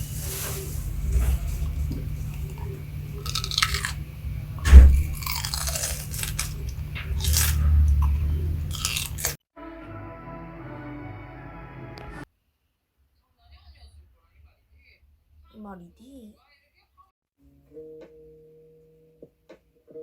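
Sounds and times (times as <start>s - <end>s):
crunching and chewing noises: 0.4s - 9.4s
low rumble: 4.0s - 5.4s
sharp loud thump: 4.7s - 5.3s
quiet music: 5.2s - 12.3s, 17.4s - 20.0s.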